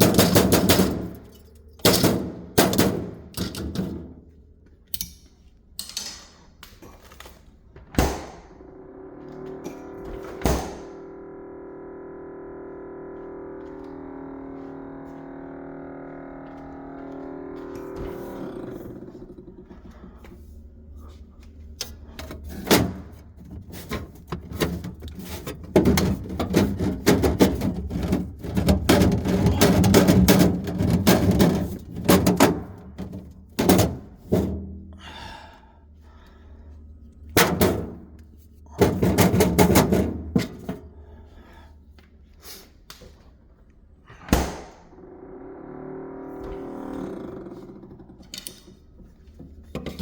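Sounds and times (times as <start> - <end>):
knocks clunks and rattles: 0.0 - 4.3, 7.8 - 11.2, 16.1 - 34.8, 37.3 - 40.9, 46.5 - 50.0
faint low hum: 0.0 - 50.0.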